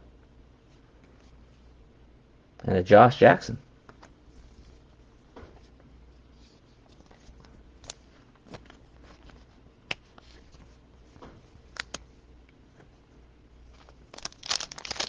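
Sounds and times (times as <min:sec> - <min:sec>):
wrapper rustling: 0:13.6 - 0:15.0.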